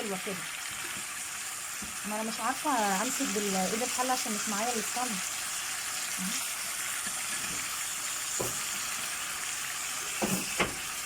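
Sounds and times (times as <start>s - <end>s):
meat sizzling in a pot: 0.0s - 11.0s
utensil knocking against pot: 8.4s - 8.6s.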